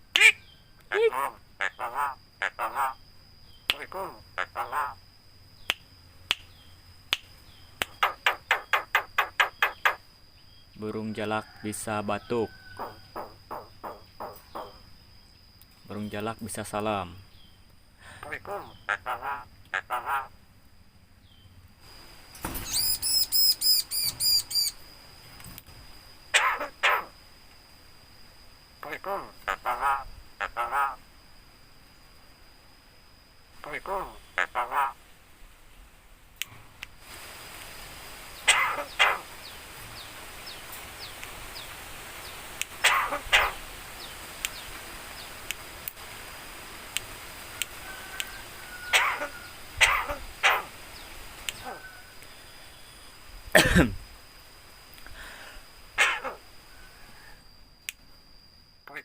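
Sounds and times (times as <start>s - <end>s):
bird calling high repeated notes: 7.8s - 10.0s, 22.6s - 24.8s
bird mimicking a cough: 42.8s - 43.5s, 48.9s - 50.2s, 53.6s - 54.0s.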